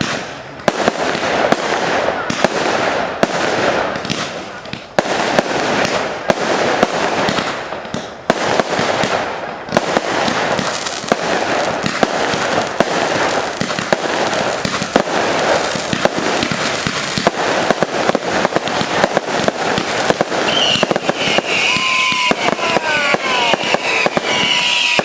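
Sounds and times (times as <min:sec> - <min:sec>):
fireworks bangs and crackling: 0:00.0 - 0:25.0.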